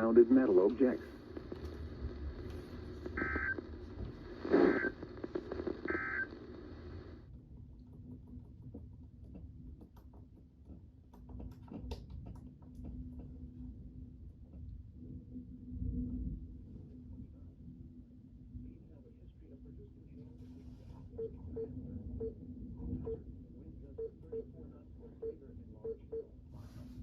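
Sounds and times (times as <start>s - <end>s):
buzzy digital tones: 0.0s - 3.9s, 4.5s - 7.2s
radio hiss: 0.0s - 7.2s.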